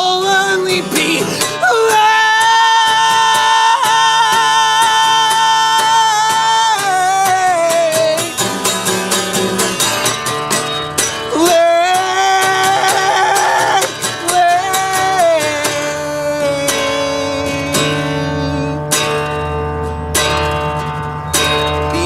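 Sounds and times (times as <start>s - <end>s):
strummed acoustic guitar: 0.0s - 22.0s
person singing long notes: 11.3s - 18.8s.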